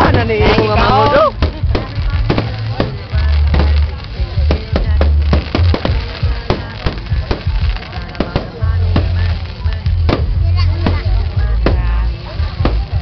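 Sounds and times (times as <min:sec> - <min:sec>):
fireworks banging: 0:00.0 - 0:13.0
loud music with heavy bass: 0:00.0 - 0:13.0.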